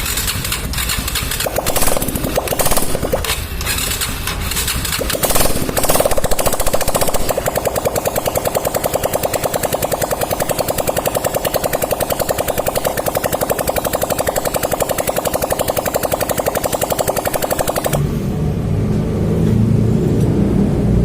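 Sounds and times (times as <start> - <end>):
rapid mechanical rattling: 0.0 - 18.2.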